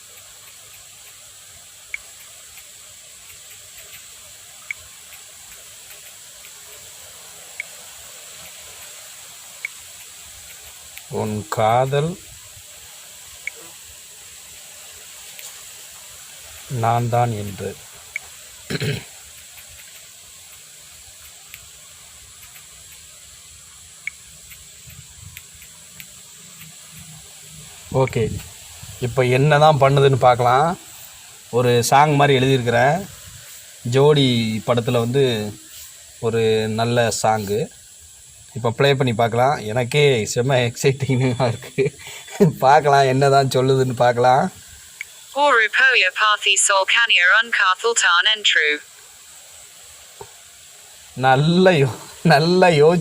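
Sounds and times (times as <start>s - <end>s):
faint keyboard ticks: 0.0s - 6.8s, 9.6s - 11.1s, 19.2s - 23.2s, 24.0s - 27.1s
small clicks: 0.0s - 6.9s, 7.6s - 11.1s, 15.2s - 15.6s, 17.5s - 23.2s, 23.9s - 27.4s, 44.9s - 45.2s
steady hiss: 0.0s - 53.0s.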